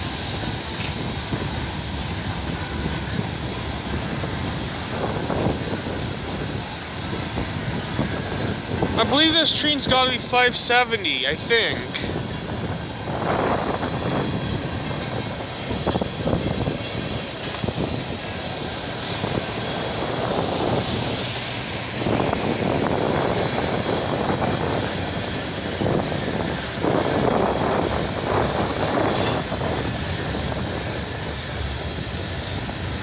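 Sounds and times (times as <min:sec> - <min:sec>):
clicks and knocks of rail cars: 0:00.0 - 0:09.0, 0:24.8 - 0:33.0
train wheels rumbling on rail: 0:00.0 - 0:33.0.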